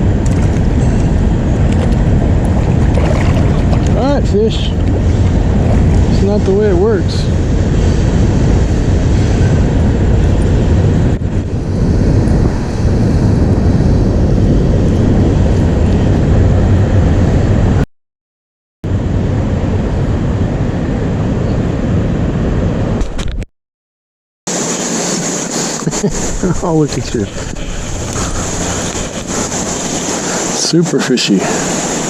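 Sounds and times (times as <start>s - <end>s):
wind buffeting microphone: 0.0s - 17.8s, 18.8s - 23.4s, 24.5s - 32.0s
rushing river water: 1.5s - 6.9s, 24.5s - 32.0s.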